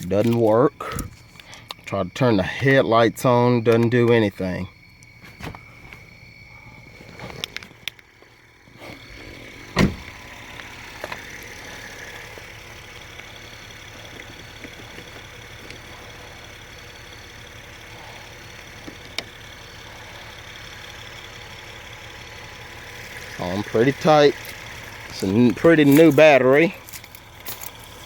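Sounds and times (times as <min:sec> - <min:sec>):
car engine idling: 0:00.0 - 0:28.0
loud thump: 0:09.7 - 0:10.2.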